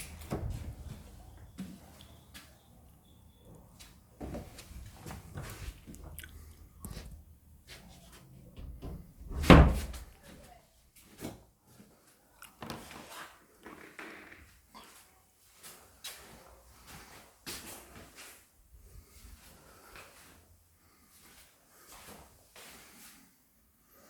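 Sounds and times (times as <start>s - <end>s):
indoor knocks and bumps: 8.5s - 10.1s
loud thump: 9.2s - 10.0s.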